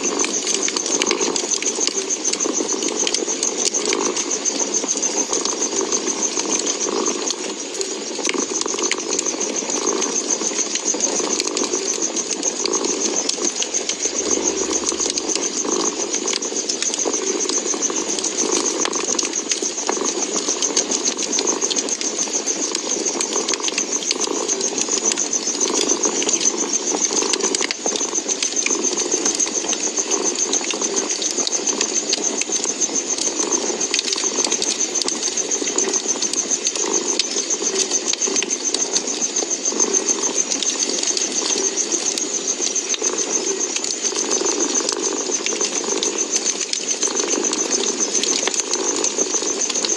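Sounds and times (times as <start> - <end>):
fire crackles and pops: 0.0 - 49.9
wood fire hissing: 0.0 - 49.9.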